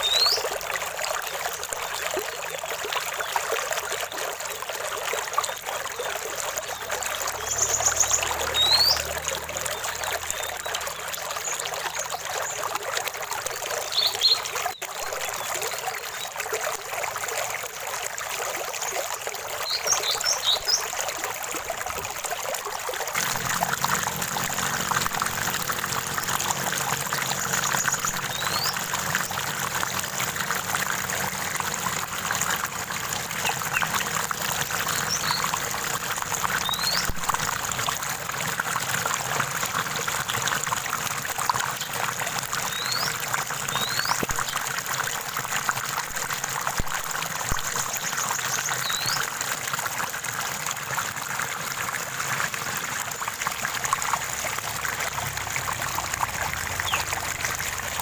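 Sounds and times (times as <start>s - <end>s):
stream trickling over stones: 0.0s - 58.0s
bird chirping: 7.4s - 9.1s, 27.5s - 28.8s.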